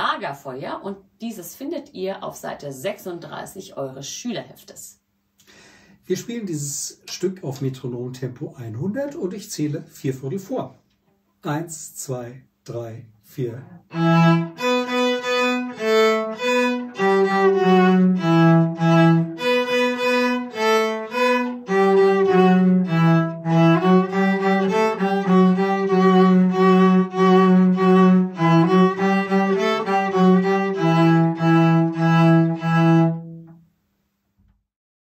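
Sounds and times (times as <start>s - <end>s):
viola and cello playing: 13.7s - 33.6s.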